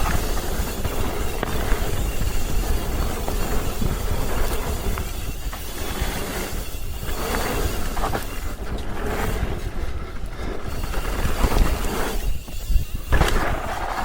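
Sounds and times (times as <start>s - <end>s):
bike knocking over bumps: 0.0s - 5.7s, 12.6s - 14.0s
bike tyre and frame rumble: 0.0s - 14.0s
wind on microphone: 0.0s - 14.0s.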